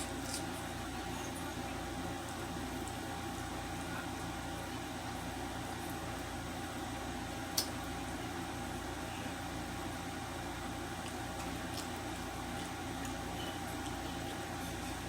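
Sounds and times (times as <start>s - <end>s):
faint clicks of eating: 0.0s - 6.4s, 7.5s - 8.2s, 10.6s - 15.0s
room hum and hiss: 0.0s - 15.0s.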